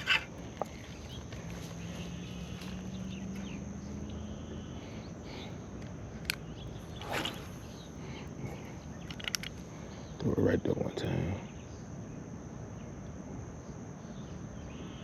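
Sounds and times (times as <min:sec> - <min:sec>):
insects buzzing: 0:00.0 - 0:15.0
short whoosh: 0:06.9 - 0:08.1.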